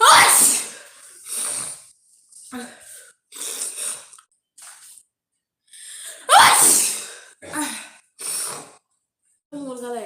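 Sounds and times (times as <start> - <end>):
woman sneezing: 0.0 - 0.8, 6.3 - 7.8.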